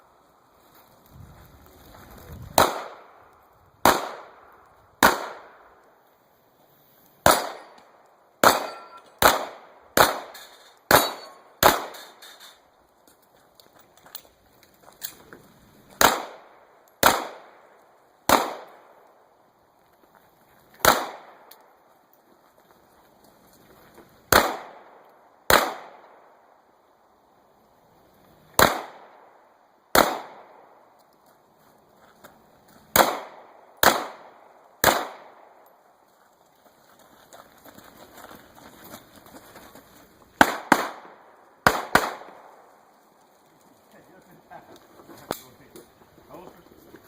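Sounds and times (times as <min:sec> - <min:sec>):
pistol shots with echo: 0:02.6 - 0:03.2, 0:03.8 - 0:04.4, 0:05.0 - 0:05.6, 0:07.2 - 0:07.8, 0:08.4 - 0:12.1, 0:16.0 - 0:17.6, 0:18.3 - 0:19.0, 0:20.8 - 0:21.4, 0:24.3 - 0:26.2, 0:28.6 - 0:29.3, 0:29.9 - 0:30.7, 0:32.9 - 0:35.6, 0:40.4 - 0:42.5.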